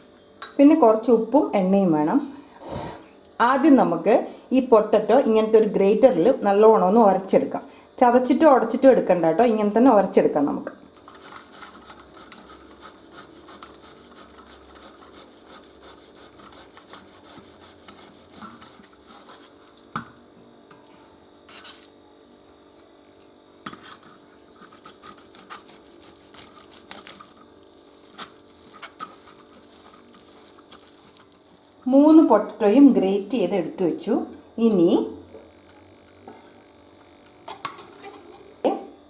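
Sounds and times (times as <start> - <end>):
potatoes scraping on hand grater: 11.0 - 19.8, 23.7 - 31.9.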